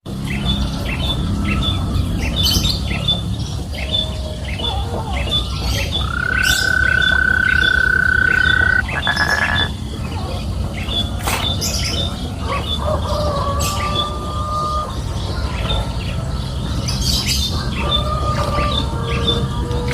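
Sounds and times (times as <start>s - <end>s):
birdlike chirping: 2.2s - 9.8s.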